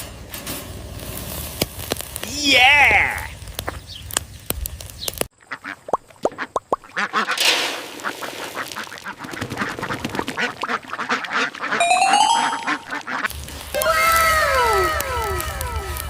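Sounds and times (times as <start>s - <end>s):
cartoon duck quacking: 11.7s - 13.3s
falling echoing tones: 11.8s - 13.1s.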